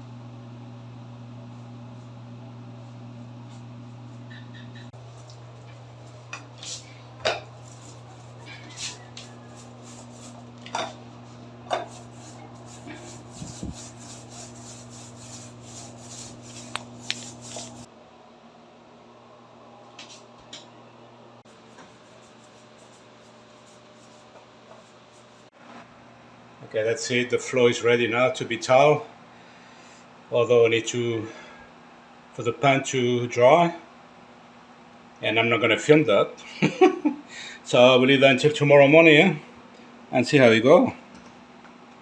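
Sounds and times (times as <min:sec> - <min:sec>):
steady low hum: 0:00.0 - 0:33.2
paintbrush scraping on floor: 0:02.8 - 0:17.9, 0:21.5 - 0:25.5.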